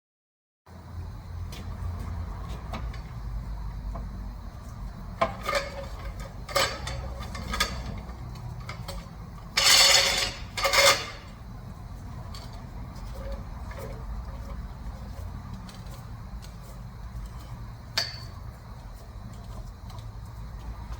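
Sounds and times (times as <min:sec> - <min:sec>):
steady low hum: 0:00.7 - 0:20.9
metal clinking and clattering: 0:05.2 - 0:11.4.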